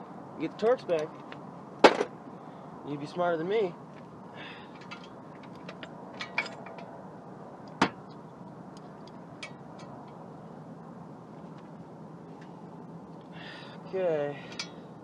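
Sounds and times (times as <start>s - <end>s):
light metallic ticks and taps: 7.6s - 10.2s.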